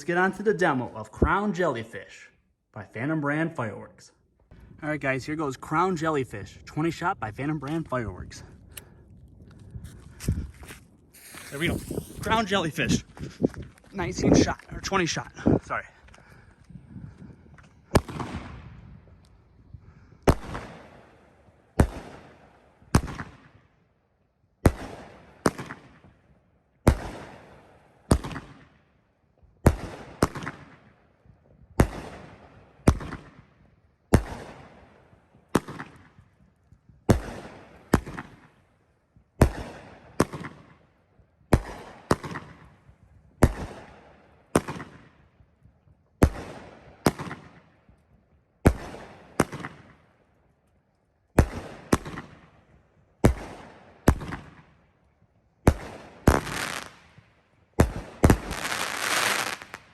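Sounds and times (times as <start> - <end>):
fireworks bangs: 11.1 - 13.3, 55.7 - 57.0, 57.8 - 59.9.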